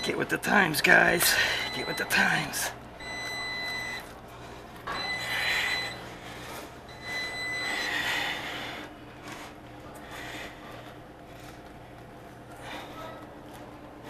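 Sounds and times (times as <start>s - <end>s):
steady low hum: 0.0s - 14.0s
electronic alarm beeping: 1.6s - 4.1s, 4.9s - 6.1s, 6.9s - 8.0s.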